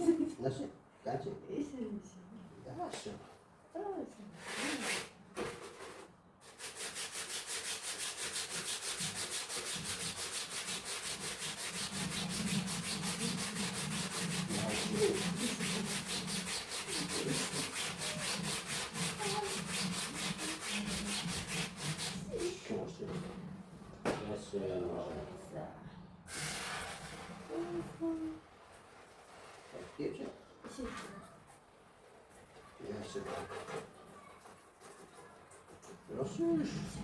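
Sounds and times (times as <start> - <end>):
rapid scrubbing strokes: 6.4 - 22.7.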